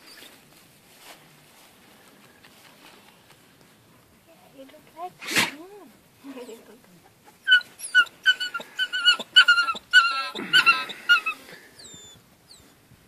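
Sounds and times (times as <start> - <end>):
puppies whining: 7.3 - 12.8.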